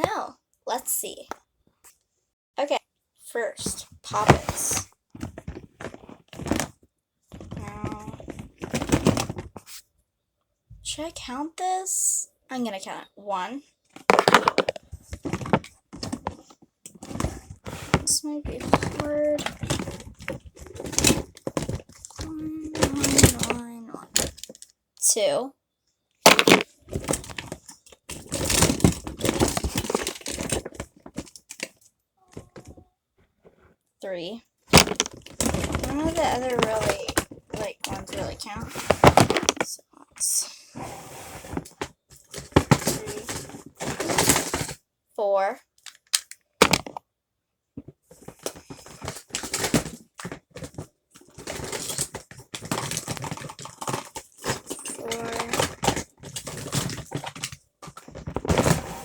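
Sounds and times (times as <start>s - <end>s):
plastic toys clicking and rustling: 3.6s - 9.8s, 13.8s - 24.8s, 26.3s - 32.9s, 34.7s - 40.4s, 41.5s - 44.8s, 45.7s - 47.0s, 47.8s - 59.0s.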